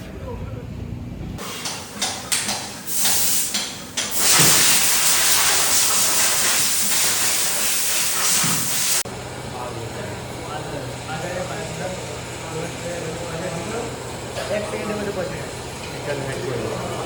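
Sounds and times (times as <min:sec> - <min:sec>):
high-pressure spray hissing: 0:01.4 - 0:09.0.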